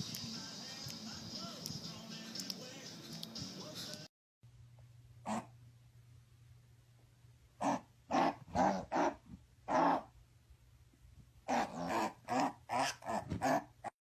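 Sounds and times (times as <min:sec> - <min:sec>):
dog barking: 0:07.6 - 0:10.1.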